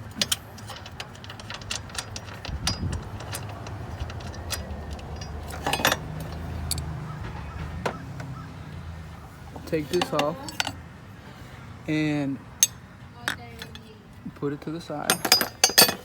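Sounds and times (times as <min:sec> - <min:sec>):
socket ratchet clicking: 0:00.0 - 0:06.9.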